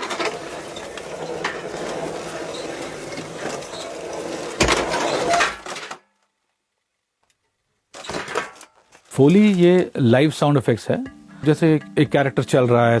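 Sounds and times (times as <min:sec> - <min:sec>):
hard objects clattering: 0:00.0 - 0:06.0.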